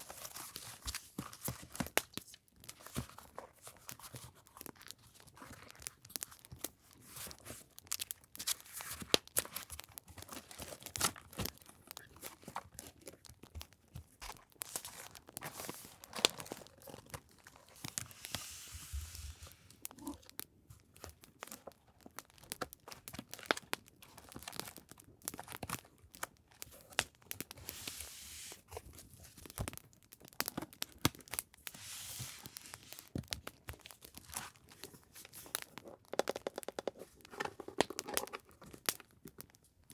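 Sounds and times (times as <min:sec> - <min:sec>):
paper rustling and crinkling: 0:00.0 - 0:29.8, 0:30.5 - 0:36.0
campfire crackle: 0:17.7 - 0:27.8, 0:29.7 - 0:35.8.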